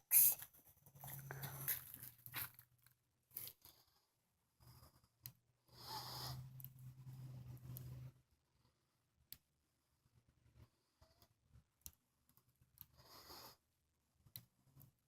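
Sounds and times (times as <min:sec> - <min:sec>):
faint rustling and handling: 0:00.2 - 0:03.9
soft clicks: 0:07.6 - 0:08.0.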